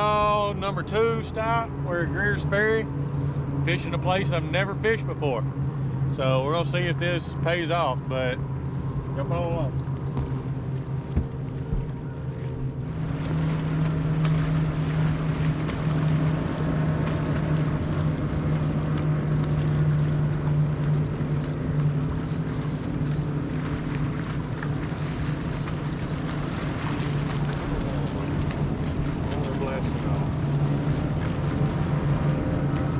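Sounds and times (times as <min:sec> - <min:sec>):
outboard motor running: 0:00.0 - 0:32.9
water rushing past hull: 0:00.0 - 0:32.9.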